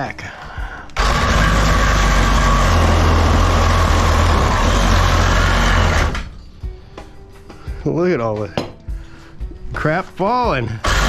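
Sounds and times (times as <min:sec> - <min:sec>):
power tool cutting metal tubes: 0:01.0 - 0:06.4, 0:10.7 - 0:11.0.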